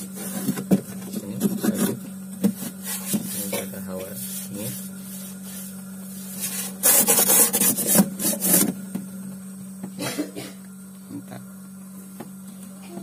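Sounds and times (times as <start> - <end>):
steady low hum: 0.0 - 13.0
rubbing and scraping: 0.1 - 8.8.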